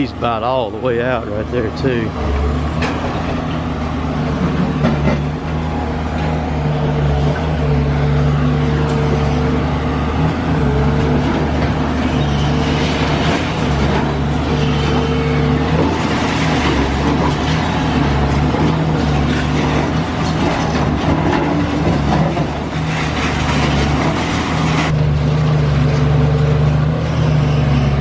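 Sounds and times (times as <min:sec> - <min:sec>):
demolition machinery working: 0:00.0 - 0:28.0
excavator engine droning: 0:00.0 - 0:28.0.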